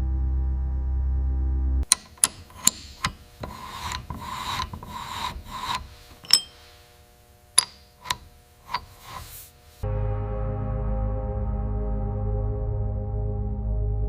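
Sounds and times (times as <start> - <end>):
sharp clicks: 1.8 - 6.3
tool rasping on metal: 1.8 - 6.8, 7.6 - 9.6
sharp metallic clink: 6.2 - 6.7.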